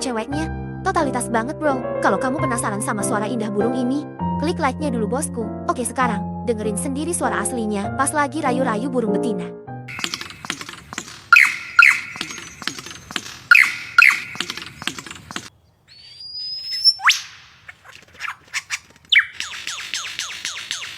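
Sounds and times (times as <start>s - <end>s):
lyrebird clicks and whistles: 9.9s - 20.9s.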